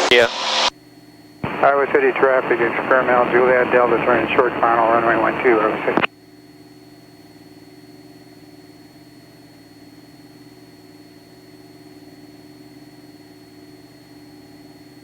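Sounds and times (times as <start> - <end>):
propeller plane engine droning: 1.4 - 6.1.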